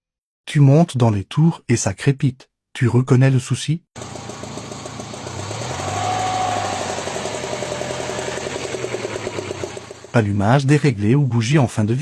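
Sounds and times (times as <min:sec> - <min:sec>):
car engine revving and sputtering: 0:04.0 - 0:10.2.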